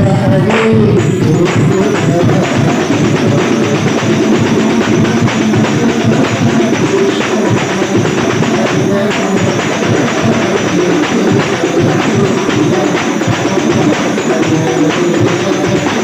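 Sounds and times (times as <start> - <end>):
frame drums played rapidly: 0.0 - 16.0.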